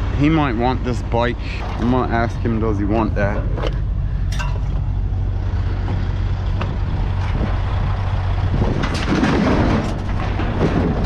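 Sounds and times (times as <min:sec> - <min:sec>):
vehicle engine running: 0:00.0 - 0:11.0
metal clatter: 0:01.6 - 0:05.0, 0:05.8 - 0:11.0
scrap metal knocks: 0:08.6 - 0:11.0.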